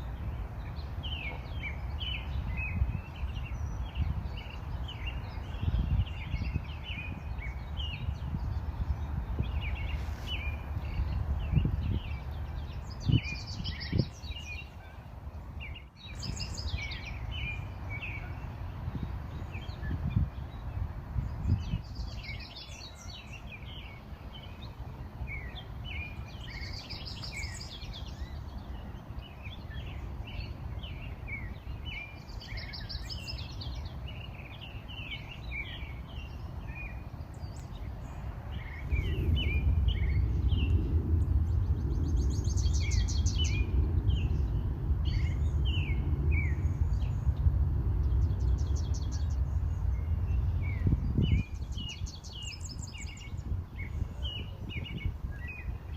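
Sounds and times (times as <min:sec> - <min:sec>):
songbirds chirping and singing: 0:00.0 - 0:55.9
low rumble: 0:38.4 - 0:52.0.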